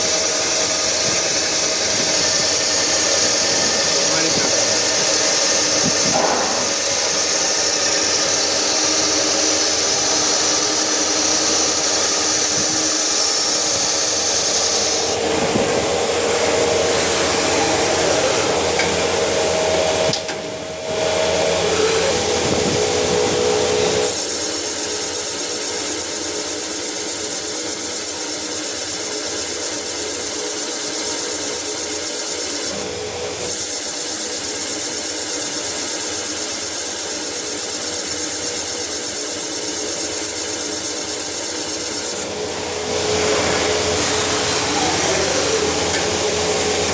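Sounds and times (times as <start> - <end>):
metal cutting hiss: 0.0 - 15.2
machine tool whine: 0.0 - 46.9.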